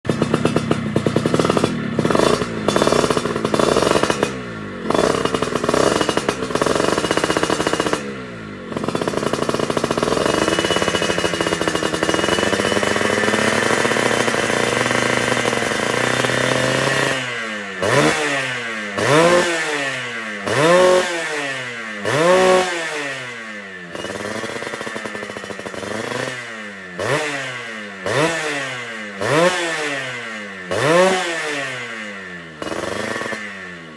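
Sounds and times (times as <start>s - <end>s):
motorcycle engine revving: 0.0s - 33.9s.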